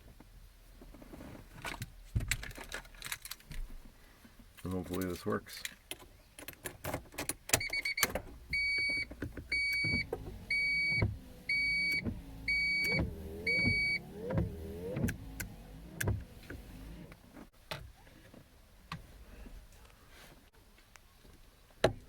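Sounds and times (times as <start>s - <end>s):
car warning chime beeping: 7.6s - 16.3s
windshield wiper motor: 8.5s - 17.5s.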